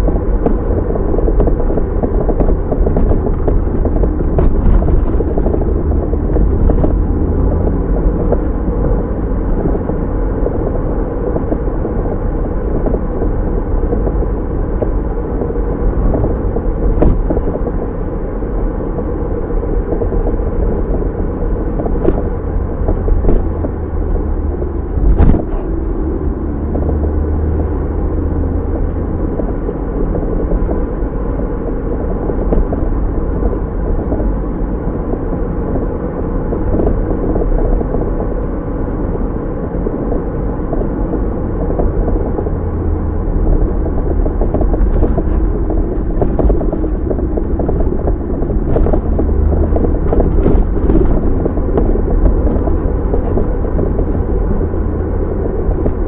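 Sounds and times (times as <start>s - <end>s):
tyre and engine rumble in car: 0.0s - 56.0s.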